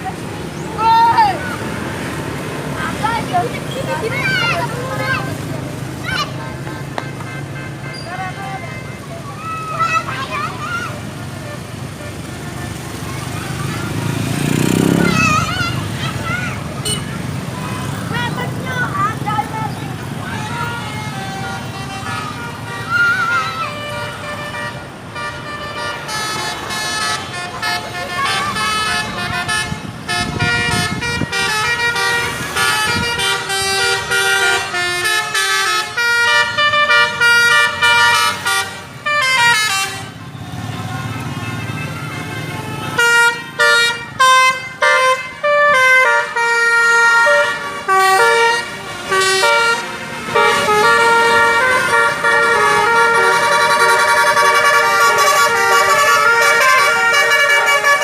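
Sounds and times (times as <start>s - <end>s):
bus horn playing a tune: 6.4s - 9.2s, 16.8s - 17.2s, 20.1s - 58.0s.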